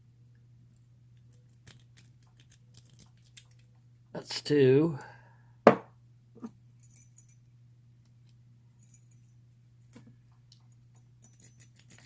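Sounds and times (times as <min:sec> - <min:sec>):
sharp knock: 0:05.7 - 0:05.9
lock pick clicking and tinkling: 0:10.5 - 0:12.0.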